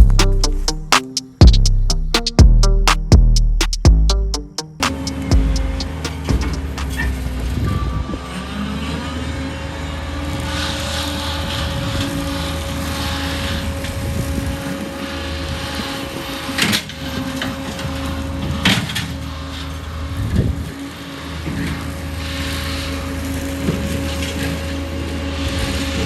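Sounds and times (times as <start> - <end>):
engine machine droning: 4.9 - 7.6.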